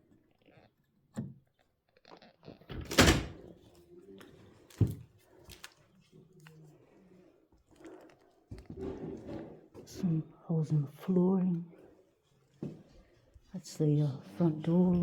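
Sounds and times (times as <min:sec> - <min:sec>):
wooden door knocks and thuds: 0:02.7 - 0:03.5.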